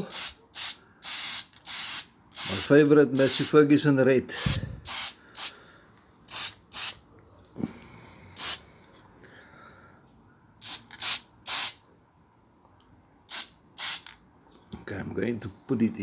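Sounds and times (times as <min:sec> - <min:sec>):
aerosol can spraying: 0:00.0 - 0:03.6, 0:04.4 - 0:05.5, 0:06.3 - 0:07.0, 0:08.4 - 0:08.6, 0:10.6 - 0:11.8, 0:13.3 - 0:14.1.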